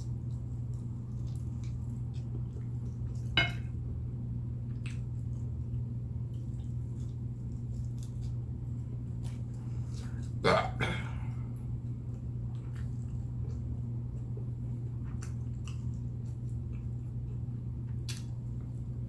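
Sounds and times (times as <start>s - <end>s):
steady low hum: 0.0s - 19.0s
person burping: 10.4s - 11.2s.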